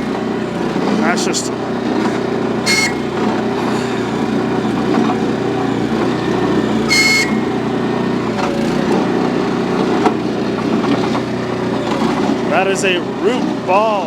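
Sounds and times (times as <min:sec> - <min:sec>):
backhoe engine running: 0:00.0 - 0:14.0
short high squeals: 0:02.6 - 0:04.1, 0:06.7 - 0:07.7.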